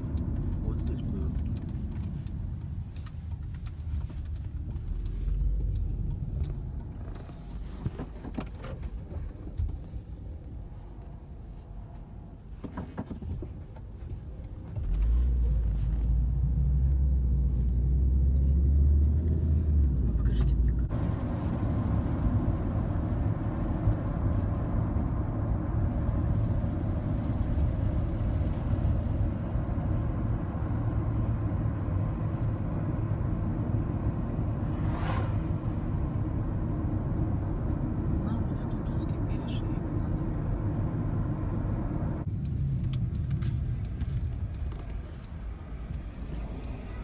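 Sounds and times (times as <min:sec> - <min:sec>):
car engine and road rumble: 0:00.0 - 0:47.0
road and wind noise: 0:00.0 - 0:47.0.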